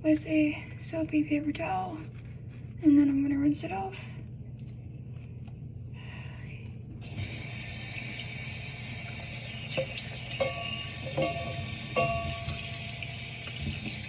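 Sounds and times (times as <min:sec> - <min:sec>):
faucet water running into sink: 0:07.0 - 0:14.0.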